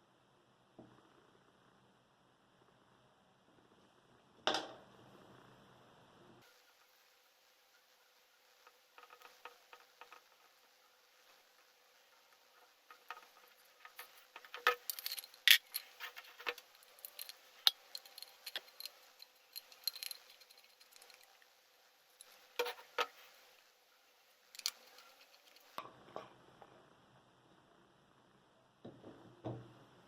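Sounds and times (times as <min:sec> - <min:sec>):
small tools clicking and clinking: 0:12.1 - 0:21.5, 0:22.2 - 0:23.4, 0:24.5 - 0:25.8.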